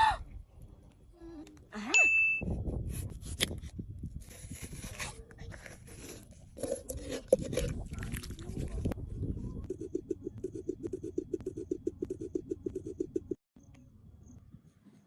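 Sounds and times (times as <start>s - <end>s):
knife cutting watermelon: 4.2s - 8.2s.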